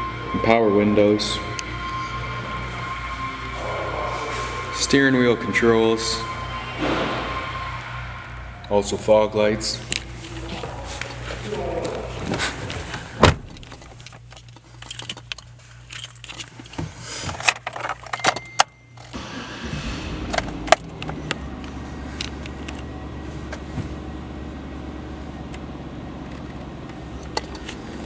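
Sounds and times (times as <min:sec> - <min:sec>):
car engine starting and idling: 0:00.0 - 0:28.0.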